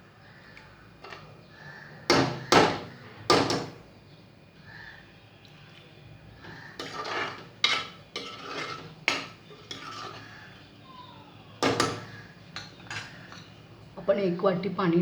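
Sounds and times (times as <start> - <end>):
metal spoon scraping pot: 6.4 - 10.7, 11.6 - 13.6.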